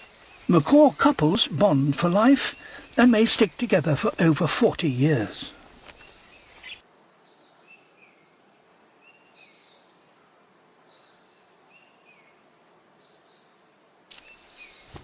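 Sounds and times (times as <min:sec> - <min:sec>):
faint forest ambience: 0:00.0 - 0:15.0
small bird chirping: 0:05.4 - 0:07.8, 0:13.0 - 0:15.0.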